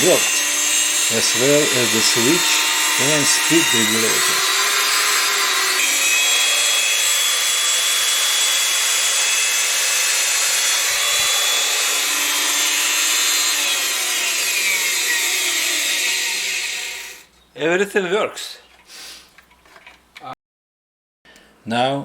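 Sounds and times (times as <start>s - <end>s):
band saw motor whining: 0.0s - 17.3s.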